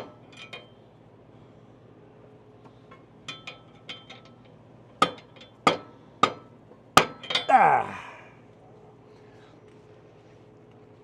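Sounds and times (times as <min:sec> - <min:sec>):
hand tools clinking on metal: 0:07.2 - 0:07.6.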